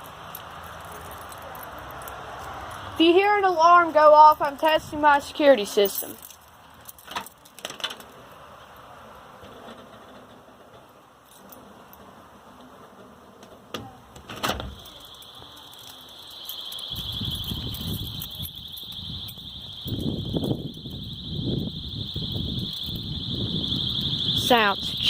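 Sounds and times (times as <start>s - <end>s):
high-pitched alarm siren: 14.6s - 25.0s.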